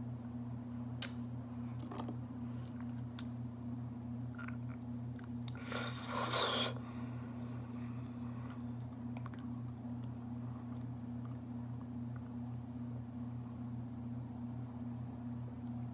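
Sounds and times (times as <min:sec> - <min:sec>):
chewing honeycomb: 0:04.3 - 0:06.8, 0:08.4 - 0:12.4.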